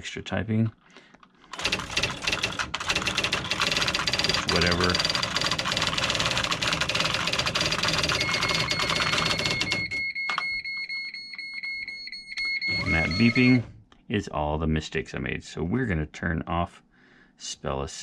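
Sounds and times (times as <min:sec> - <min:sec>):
electronic typewriter clatter: 0:01.5 - 0:10.0, 0:12.7 - 0:13.7
high beeps: 0:08.1 - 0:13.7.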